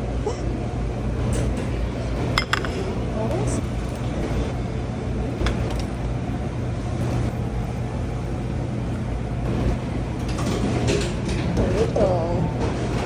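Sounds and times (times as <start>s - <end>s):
constant low hum: 0.0s - 13.0s
restaurant dining room din: 0.2s - 13.0s
tableware clink: 2.3s - 3.0s.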